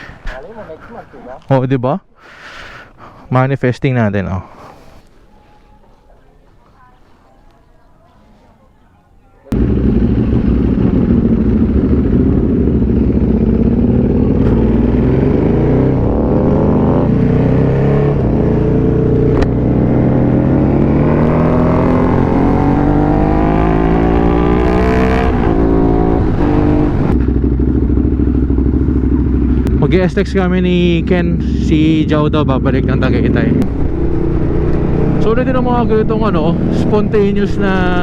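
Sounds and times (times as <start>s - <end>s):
motorcycle engine accelerating: 9.5s - 38.0s.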